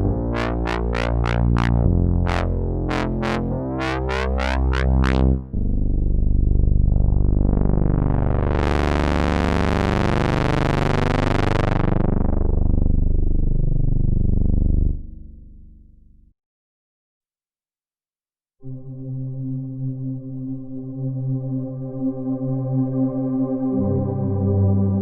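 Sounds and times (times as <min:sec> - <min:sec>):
sustained synthesizer pad chord: 0:00.0 - 0:15.1, 0:18.6 - 0:25.0
plucked synthesizer notes: 0:00.0 - 0:15.6
synth bass line: 0:00.0 - 0:16.1.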